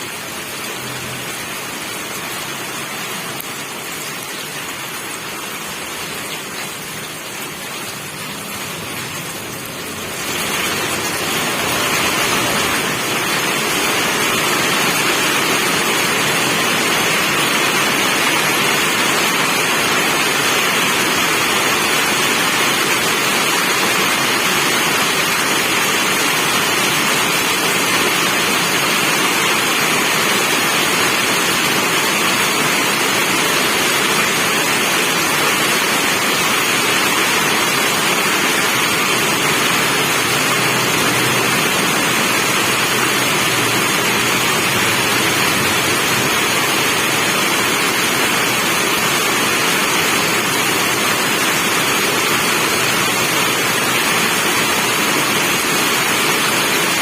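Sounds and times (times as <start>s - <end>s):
steady rain hiss: 0.0s - 57.0s.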